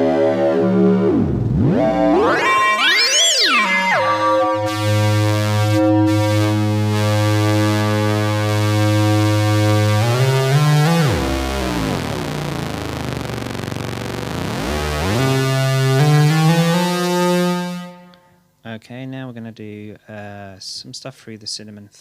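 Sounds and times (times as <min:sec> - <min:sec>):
buzzy synthesizer drone: 0:00.0 - 0:18.1.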